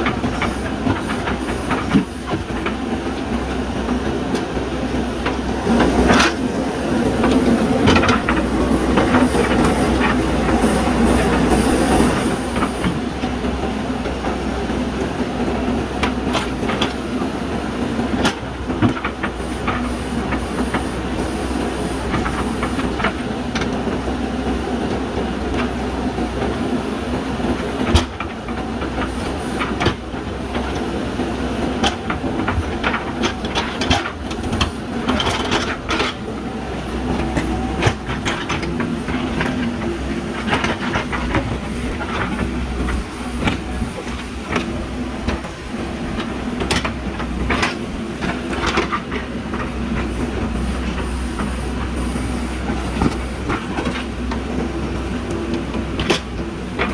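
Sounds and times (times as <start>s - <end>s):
diesel engine running under load: 0.0s - 56.9s.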